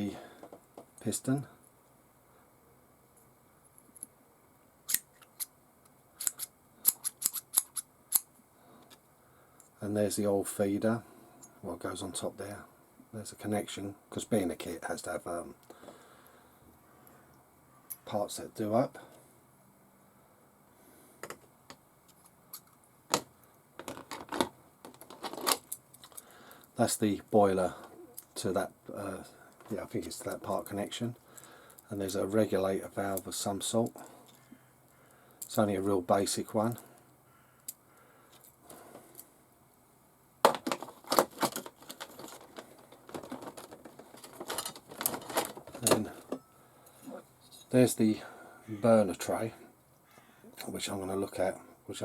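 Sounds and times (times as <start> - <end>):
small parts clicking: 4.9 - 8.3
small parts clicking and tapping: 4.9 - 9.0, 21.2 - 26.7, 31.2 - 31.9, 40.4 - 47.0
plastic packaging crinkling: 40.5 - 46.0.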